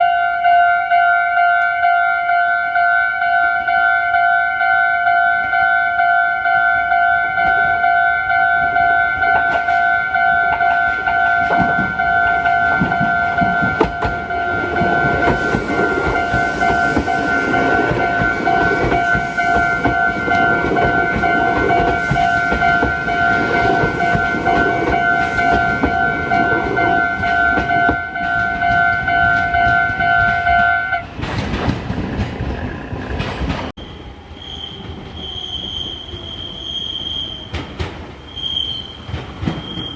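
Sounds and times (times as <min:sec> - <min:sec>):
level crossing bell ringing: 0:00.0 - 0:31.0
train wheels clicking over rail joints: 0:09.2 - 0:33.7, 0:37.0 - 0:39.9.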